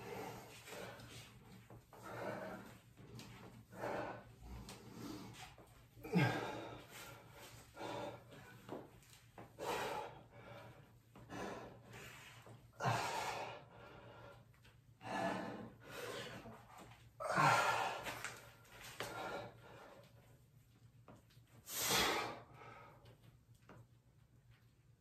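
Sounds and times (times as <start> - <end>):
person breathing hard and gasping: 3.7 - 8.7, 9.6 - 18.4.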